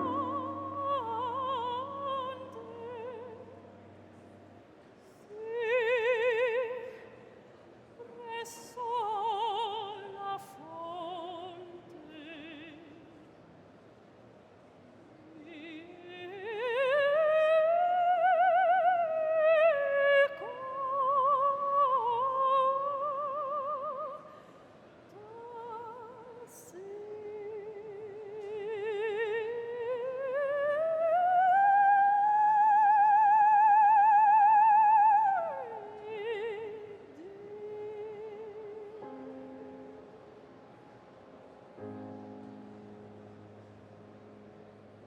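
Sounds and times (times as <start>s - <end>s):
operatic singing: 0.0s - 3.7s.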